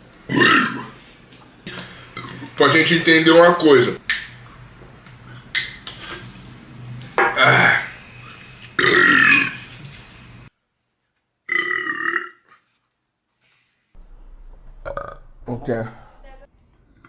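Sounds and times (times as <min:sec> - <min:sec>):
man burping loudly: 0:00.3 - 0:00.9, 0:07.3 - 0:08.0, 0:08.8 - 0:09.6, 0:11.5 - 0:12.5, 0:14.8 - 0:15.3.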